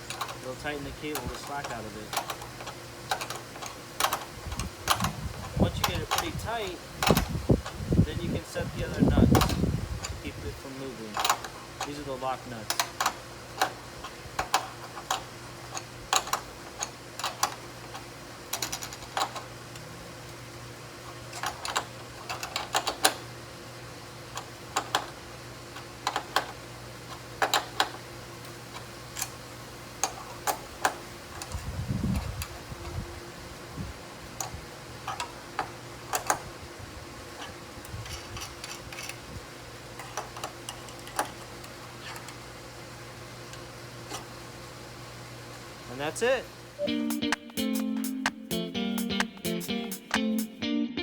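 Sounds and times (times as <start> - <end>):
wrench clicking on lock nuts: 0.0 - 0.4, 1.1 - 6.4, 7.0 - 7.8, 9.3 - 10.2, 11.1 - 12.0, 12.7 - 19.8, 21.3 - 23.3, 24.3 - 28.0, 30.0 - 32.5, 34.4 - 36.5, 38.0 - 39.2
steady low hum: 0.0 - 27.4.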